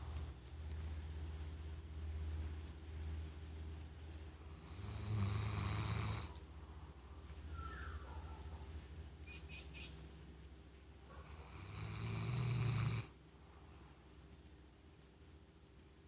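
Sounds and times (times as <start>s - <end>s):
dog snoring: 4.6s - 6.4s, 11.2s - 13.1s.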